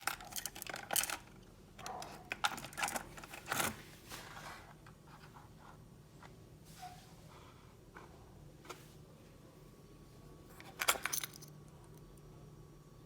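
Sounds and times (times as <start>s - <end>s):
handling clicks and scrapes: 0.0s - 5.4s.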